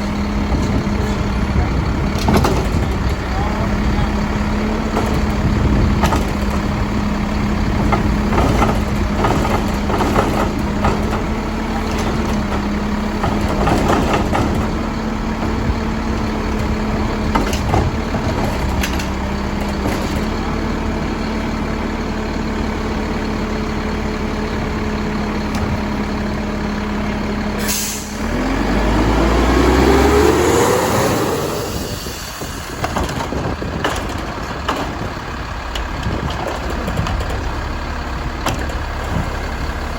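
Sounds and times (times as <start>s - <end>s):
diesel truck engine: 0.0s - 39.9s
loading knocks and clatter: 2.0s - 3.3s, 4.5s - 20.7s, 32.8s - 39.5s
air brake hiss: 27.6s - 28.2s.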